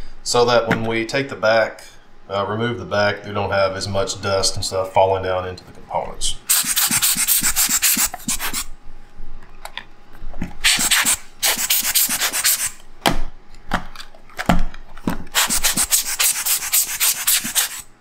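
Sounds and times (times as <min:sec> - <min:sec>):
hissing air bursts: 0:06.5 - 0:08.7, 0:10.6 - 0:12.8, 0:15.4 - 0:17.9.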